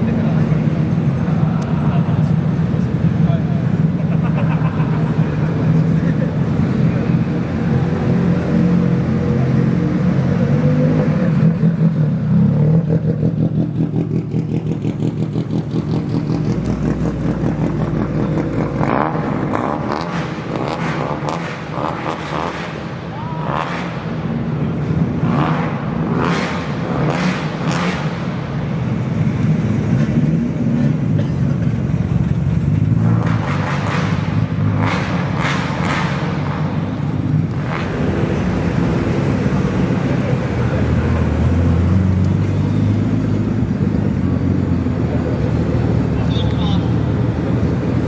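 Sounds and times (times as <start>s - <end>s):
voices: 0.0s - 7.9s, 45.2s - 47.1s.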